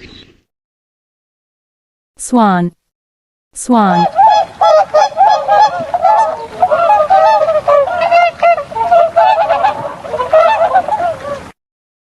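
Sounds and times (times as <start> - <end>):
swans honking: 3.9 - 11.6.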